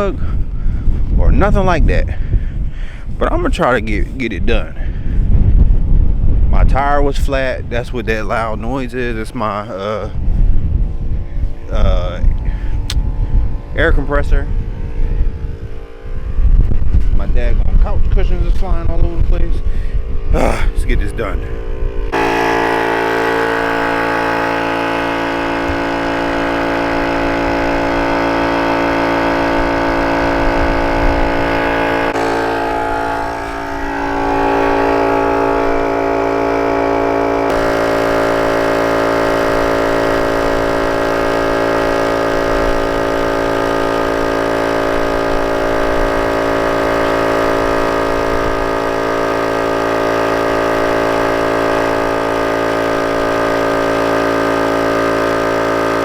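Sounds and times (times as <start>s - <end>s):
air compressor motor running: 10.1s - 56.0s.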